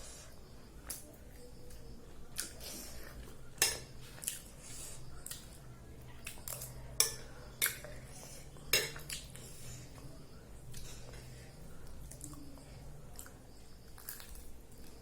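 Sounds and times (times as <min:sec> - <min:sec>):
cutlery clinking on a plate: 0:03.6 - 0:04.0, 0:06.5 - 0:07.9, 0:08.7 - 0:09.3.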